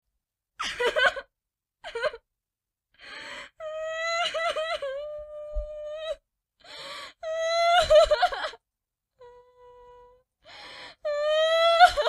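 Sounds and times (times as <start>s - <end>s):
noisy breath in: 3.0s - 3.6s, 6.6s - 7.2s, 10.4s - 11.0s
person sobbing and wailing: 3.6s - 6.2s, 7.2s - 8.6s, 11.1s - 12.0s.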